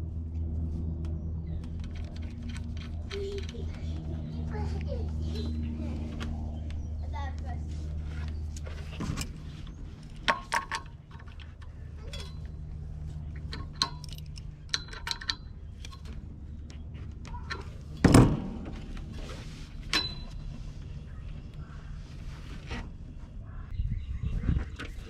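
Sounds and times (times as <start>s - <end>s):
steady low hum: 0.0s - 25.0s
metal tools clinking: 10.1s - 12.7s, 13.4s - 16.1s, 19.9s - 20.5s.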